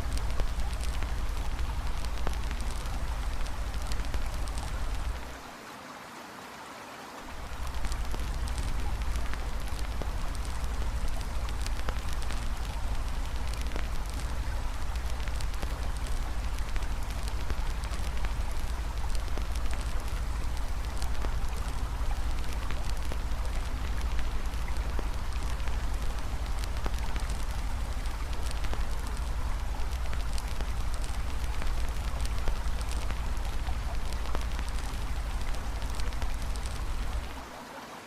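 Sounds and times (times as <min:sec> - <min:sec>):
campfire crackling and popping: 0:00.0 - 0:05.4, 0:07.3 - 0:37.4
river water flowing: 0:00.0 - 0:38.0.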